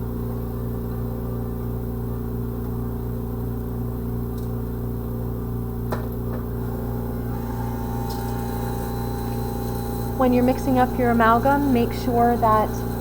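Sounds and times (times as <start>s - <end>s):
amalgamator mechanical hum: 0.0s - 13.0s.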